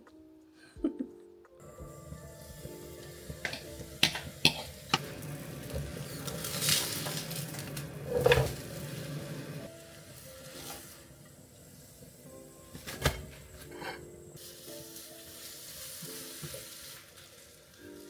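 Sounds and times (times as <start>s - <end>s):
food sizzling in a pan: 1.6s - 18.0s
utensil clinking against pan: 3.4s - 5.1s.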